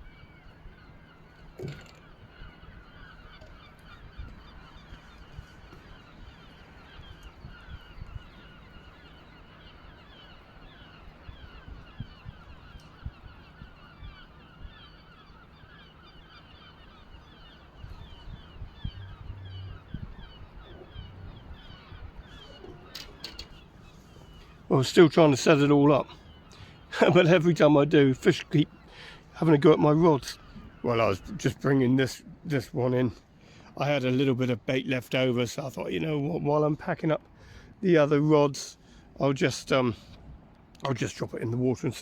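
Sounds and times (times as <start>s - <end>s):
flock of birds calling: 0.1s - 32.0s
low rumble: 18.0s - 22.3s.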